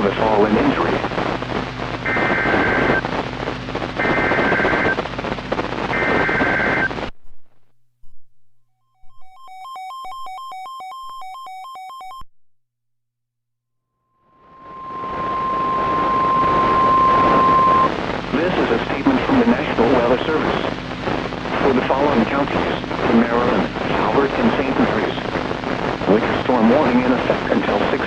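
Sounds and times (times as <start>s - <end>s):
radio static: 0.0s - 7.7s, 14.3s - 28.0s
digital header data bursts: 4.0s - 5.0s.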